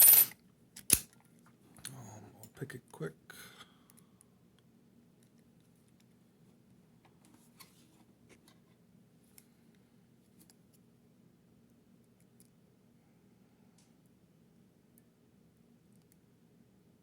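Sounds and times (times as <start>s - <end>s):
lock pick clicks and scrapes: 0.0s - 1.1s.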